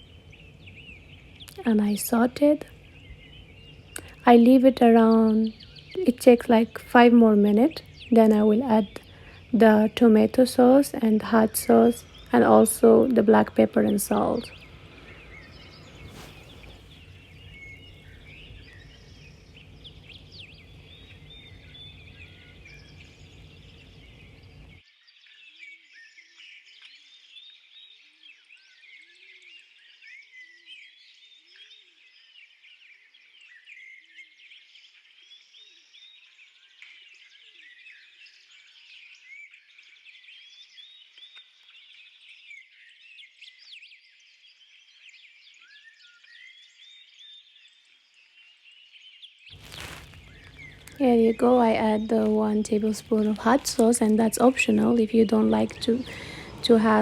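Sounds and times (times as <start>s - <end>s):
small birds chirping: 0.0s - 57.0s
low rising-and-falling bird calls: 12.0s - 24.8s, 49.6s - 57.0s
steady noise: 49.6s - 57.0s.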